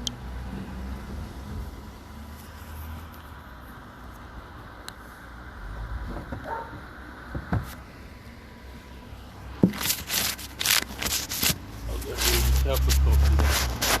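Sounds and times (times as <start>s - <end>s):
rustling scraping clatter: 9.6s - 14.0s.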